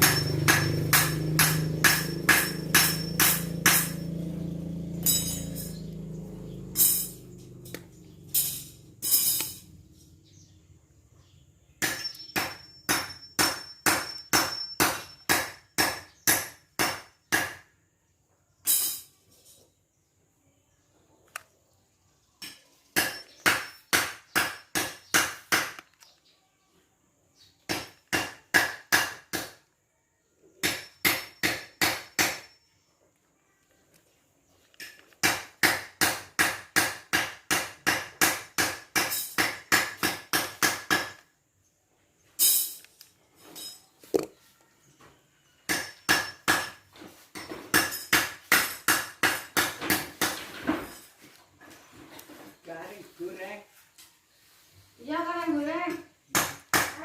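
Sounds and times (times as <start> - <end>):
hammer striking metal: 0.0 - 4.3, 5.0 - 5.8, 11.8 - 17.6, 22.4 - 25.8, 27.7 - 29.6, 30.6 - 32.6, 35.2 - 41.2, 45.7 - 46.8, 47.4 - 50.4.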